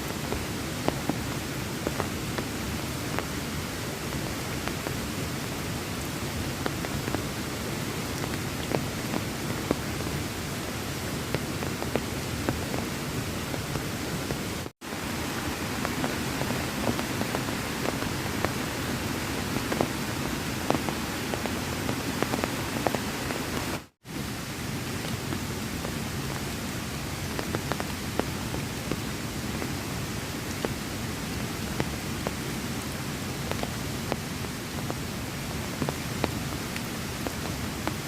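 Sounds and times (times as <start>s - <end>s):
heavy rain: 0.0s - 38.0s
raindrops ticking sharply: 0.1s - 24.0s.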